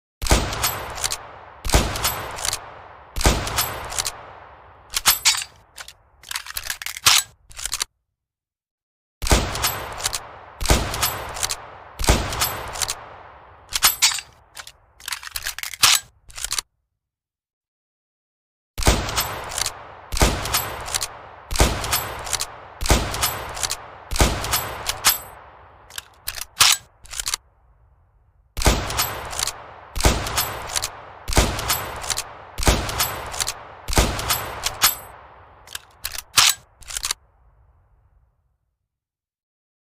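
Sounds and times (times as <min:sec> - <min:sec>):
sharp metallic clicks: 0:00.2 - 0:04.3, 0:04.9 - 0:07.9, 0:09.2 - 0:13.1, 0:13.7 - 0:16.7, 0:18.8 - 0:27.4, 0:28.6 - 0:37.3
rifle shots echoing: 0:00.2 - 0:05.8, 0:09.2 - 0:14.6, 0:18.8 - 0:27.4, 0:28.6 - 0:37.2
rifle bolt being worked: 0:00.6 - 0:01.2, 0:02.0 - 0:02.6, 0:03.6 - 0:04.2, 0:04.9 - 0:07.9, 0:13.7 - 0:16.7, 0:20.4 - 0:21.1, 0:21.8 - 0:22.5, 0:23.1 - 0:23.8, 0:24.4 - 0:25.3, 0:25.9 - 0:27.4, 0:28.9 - 0:33.6, 0:34.2 - 0:35.1, 0:35.7 - 0:37.2.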